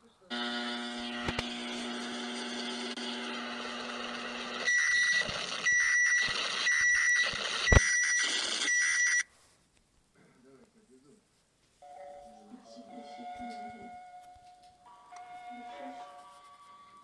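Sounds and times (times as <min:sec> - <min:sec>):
steady electronic buzzing tone: 0:00.3 - 0:09.2
high electronic beeps: 0:04.1 - 0:09.2.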